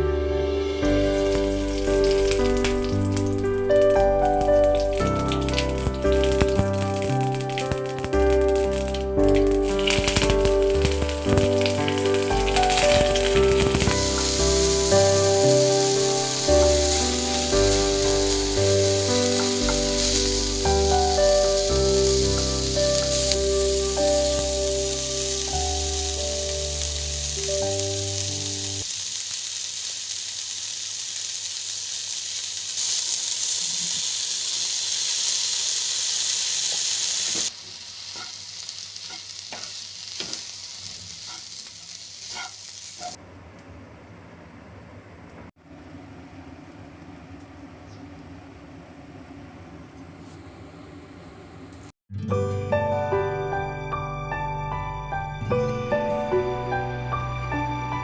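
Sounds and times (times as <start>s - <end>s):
background music with bass line: 0.0s - 28.7s
food sizzling in a pan: 0.5s - 43.2s.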